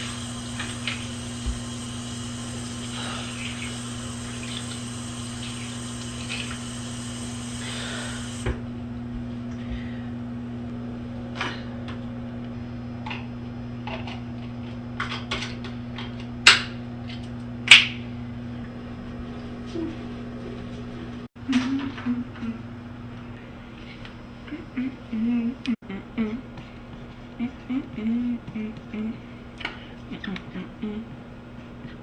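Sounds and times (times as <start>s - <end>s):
old soundtrack hum: 0.0s - 8.5s.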